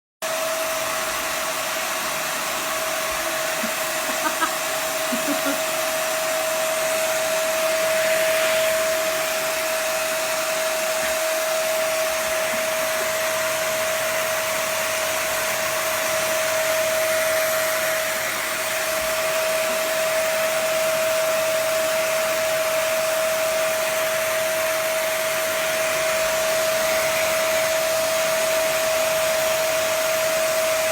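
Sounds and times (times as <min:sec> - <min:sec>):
vacuum cleaner motor whine: 0:00.2 - 0:30.9.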